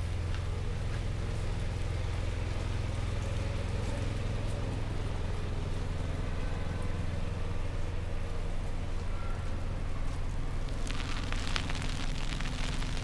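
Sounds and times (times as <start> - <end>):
low rumble of street noise: 0.0 - 13.0
light patter: 7.8 - 13.0.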